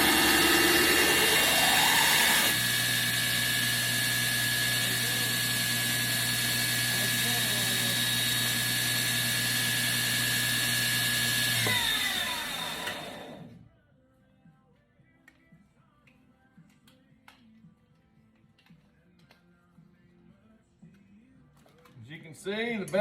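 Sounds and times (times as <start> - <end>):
electric grinder running: 0.0 - 13.5.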